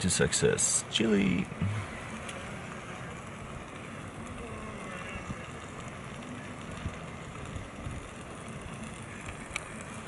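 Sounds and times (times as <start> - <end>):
campfire rumble: 0.0 - 10.0
fire crackling pops: 0.0 - 10.0.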